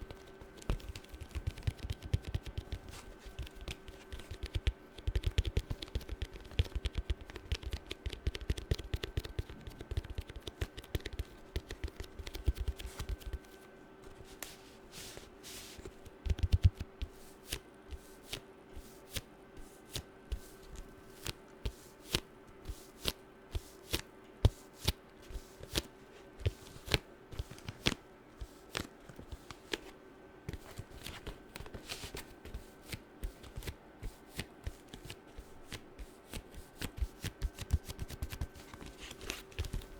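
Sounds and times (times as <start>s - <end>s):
faint steady hum: 0.0s - 39.9s.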